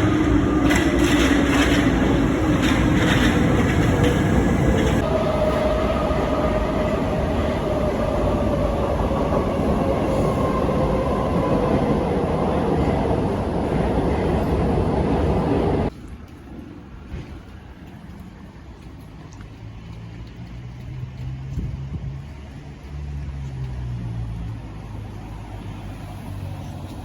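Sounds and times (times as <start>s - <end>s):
train wheels clacking on rails: 0.0s - 6.1s
train rumble: 0.0s - 27.0s.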